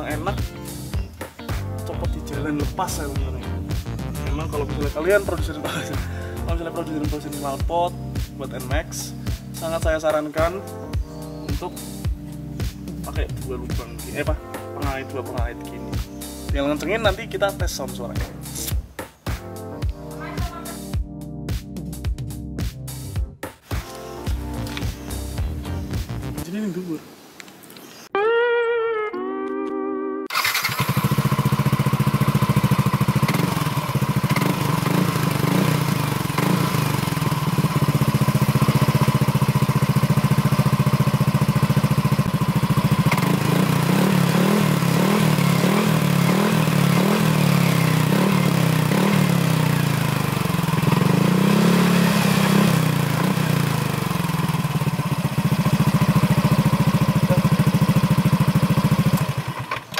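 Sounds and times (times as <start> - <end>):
scooter engine running: 30.3 - 59.9.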